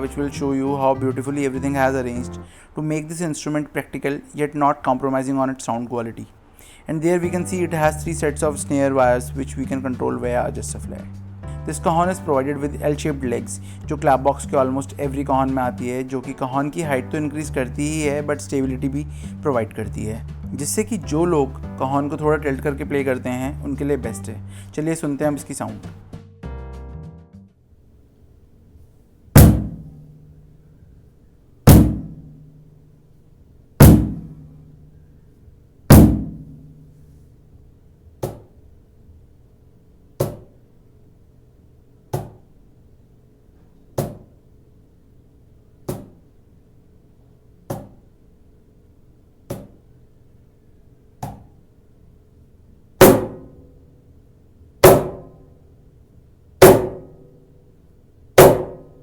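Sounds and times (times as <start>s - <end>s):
cajon struck by hand: 29.4s - 30.5s, 31.7s - 32.7s, 33.8s - 34.9s, 35.9s - 37.0s, 38.2s - 38.5s, 40.2s - 40.6s, 42.1s - 42.4s, 44.0s - 44.3s, 53.0s - 53.7s, 54.8s - 55.4s, 56.6s - 57.4s, 58.4s - 59.0s.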